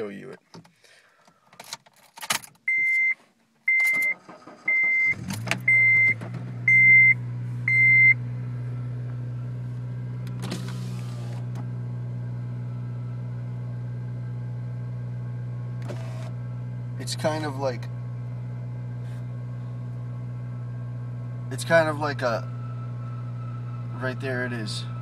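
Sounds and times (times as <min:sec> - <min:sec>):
dashboard warning chime beeping: 0:02.7 - 0:08.3
car engine starting and idling: 0:03.7 - 0:25.0.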